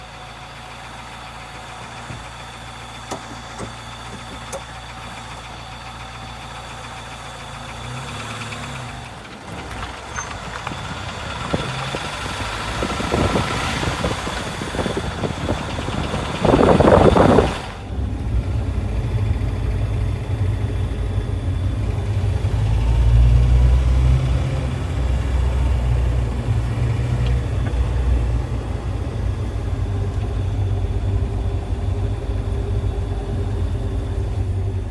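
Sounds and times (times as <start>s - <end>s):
car engine running: 0.0s - 34.9s
engine ticking: 0.0s - 34.9s.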